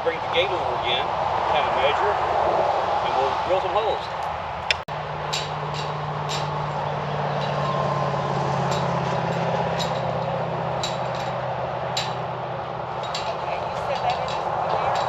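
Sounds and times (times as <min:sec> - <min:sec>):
tractor diesel engine running: 0:04.0 - 0:15.0.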